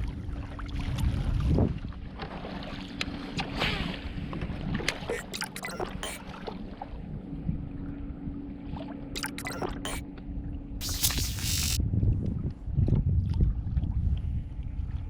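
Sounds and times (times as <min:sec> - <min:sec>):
short rush of noise: 0:10.8 - 0:11.8
wind on microphone: 0:12.0 - 0:15.0.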